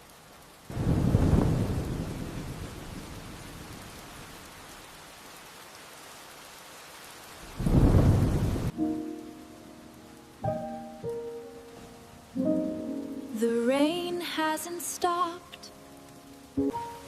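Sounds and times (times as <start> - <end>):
steady rain: 0.0 - 17.0
thunder rumbling: 0.7 - 4.6, 7.4 - 8.8.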